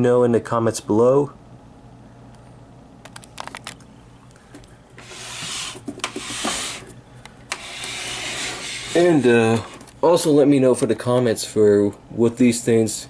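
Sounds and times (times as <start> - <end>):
rubbing and rustling by hand: 5.0 - 7.0, 7.6 - 10.0.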